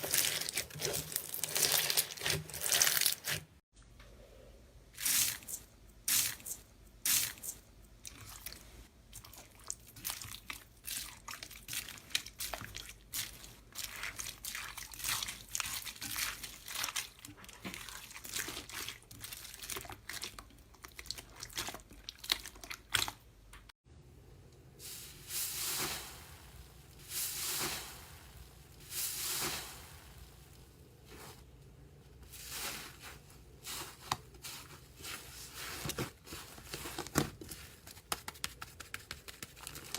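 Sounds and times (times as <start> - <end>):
slow slime squishes: 0.0 - 3.6, 5.0 - 23.2, 32.2 - 39.9.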